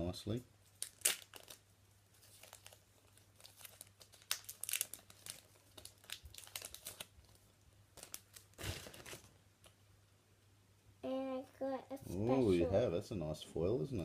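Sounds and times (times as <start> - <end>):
card pack wrappers crinkling: 0.7 - 9.8.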